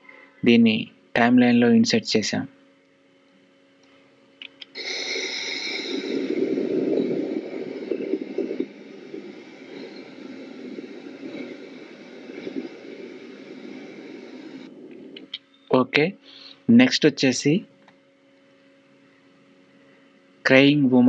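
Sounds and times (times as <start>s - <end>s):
low noisy drone: 0.0s - 21.0s
hiss: 4.6s - 15.3s.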